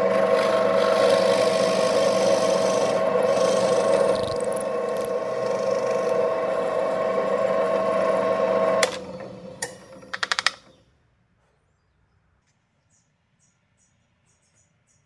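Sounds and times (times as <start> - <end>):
power tool running: 0.0 - 10.8.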